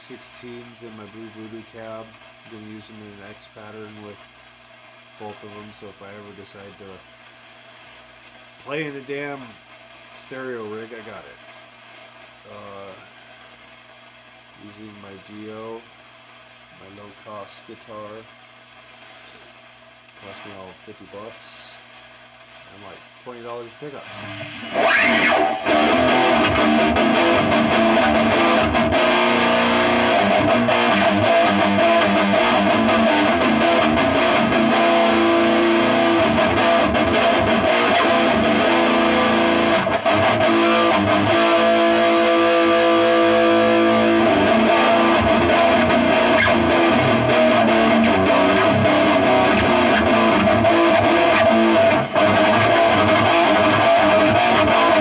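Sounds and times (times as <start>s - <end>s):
amp hiss: 0.0s - 55.0s
electric guitar chords and riffs: 24.1s - 55.0s.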